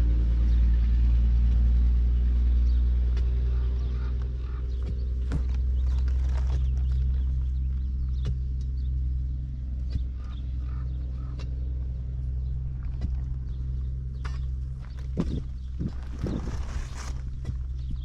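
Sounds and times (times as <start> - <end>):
motor humming: 12.2 - 18.0.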